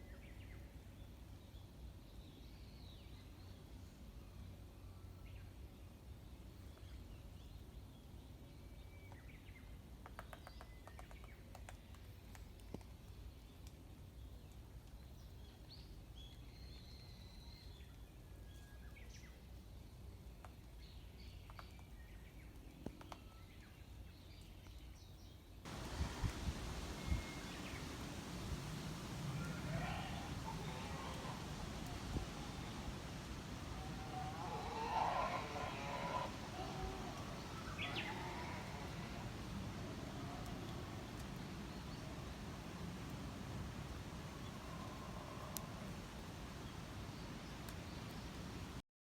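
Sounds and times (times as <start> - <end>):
faint bird calls: 25.7 - 48.7
wind noise: 25.7 - 48.8.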